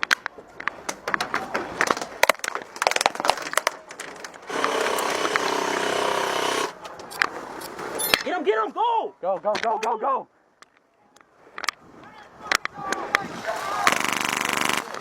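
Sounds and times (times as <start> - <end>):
full-auto airsoft burst: 4.5 - 6.8, 13.8 - 15.0.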